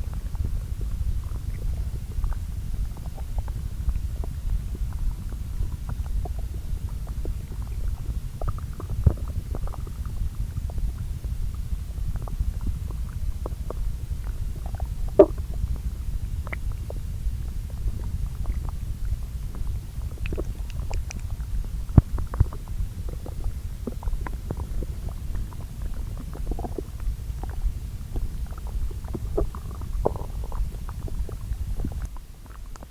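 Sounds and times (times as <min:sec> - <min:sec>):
bowel gurgling and rumbling: 0:00.0 - 0:32.9.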